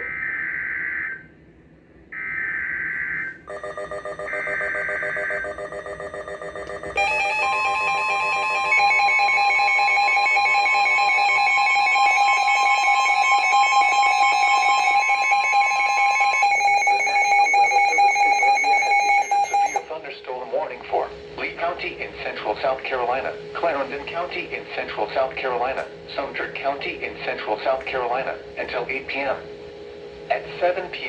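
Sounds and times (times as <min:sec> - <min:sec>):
screeching data bursts: 0:02.2 - 0:19.9
loud steady alert tone: 0:02.2 - 0:20.0
fast-pulsing electronic beep: 0:03.6 - 0:19.9.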